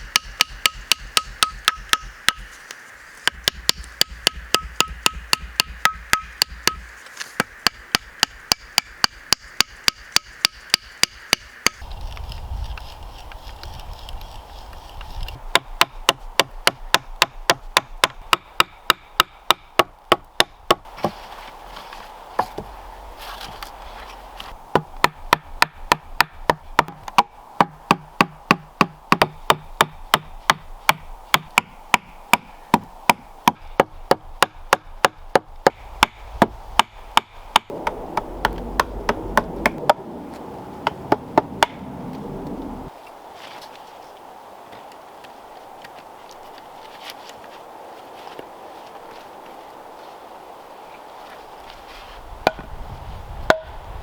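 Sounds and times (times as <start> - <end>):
hand tool striking wood: 0.0 - 2.6, 3.2 - 11.8, 15.5 - 21.2, 24.7 - 39.9, 53.5 - 53.7.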